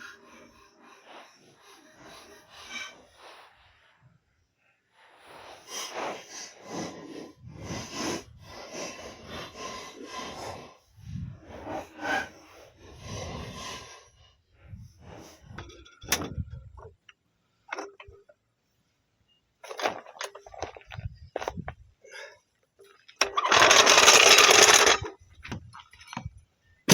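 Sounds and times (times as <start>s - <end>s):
hand tools rasping and scraping: 23.2s - 26.3s.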